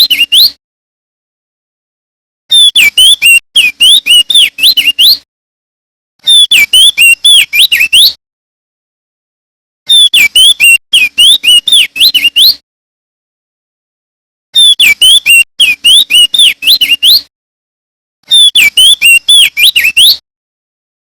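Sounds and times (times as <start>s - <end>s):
bird singing sliding whistled notes: 2.5s - 5.2s, 6.2s - 8.2s, 9.9s - 12.6s, 14.6s - 17.3s, 18.3s - 20.2s.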